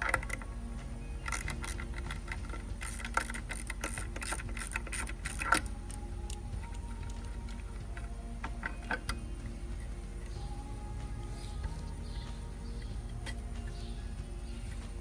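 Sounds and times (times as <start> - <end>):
small metal parts rattling: 0.0 - 0.5, 1.2 - 10.5.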